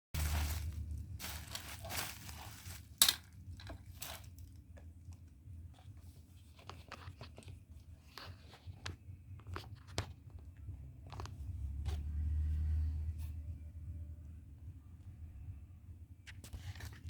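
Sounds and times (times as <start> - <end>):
packaging crinkling: 0.2 - 4.6
low steady hum: 0.2 - 17.0.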